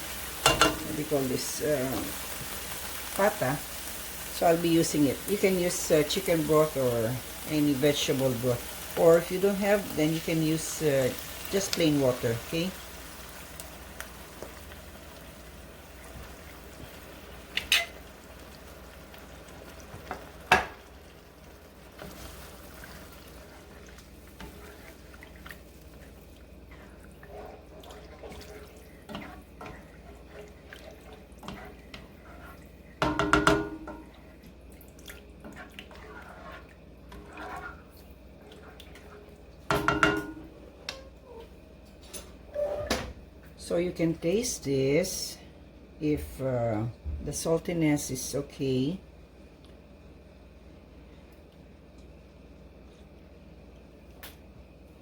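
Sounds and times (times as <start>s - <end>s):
broth heating in a pan: 0.0s - 41.4s
utensil clanking against pan: 0.4s - 0.9s.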